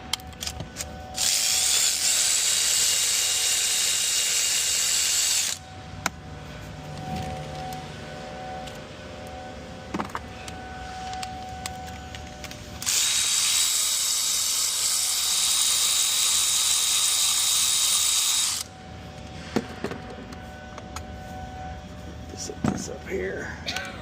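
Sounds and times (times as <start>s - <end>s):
cordless power tool whining: 0.0s - 5.8s, 6.8s - 19.3s.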